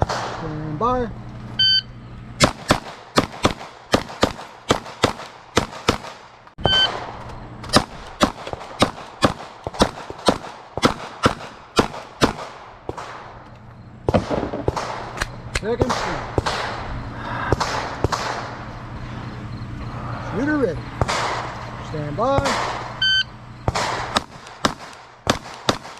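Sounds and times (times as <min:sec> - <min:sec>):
pistols firing rapid shots: 0:00.0 - 0:00.4, 0:02.4 - 0:07.2, 0:07.8 - 0:13.4, 0:14.0 - 0:16.9, 0:17.5 - 0:18.7, 0:20.9 - 0:23.0, 0:23.6 - 0:25.9
shot timer beep: 0:01.6 - 0:02.0, 0:06.6 - 0:06.9, 0:23.0 - 0:23.4.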